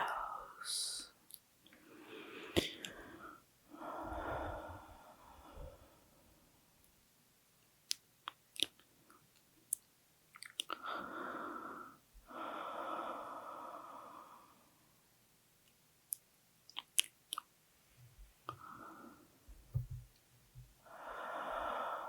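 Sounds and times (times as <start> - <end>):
heavy breaths: 1.8 - 6.3
wet mouth clicks: 7.9 - 8.9, 9.7 - 10.8, 16.1 - 17.5.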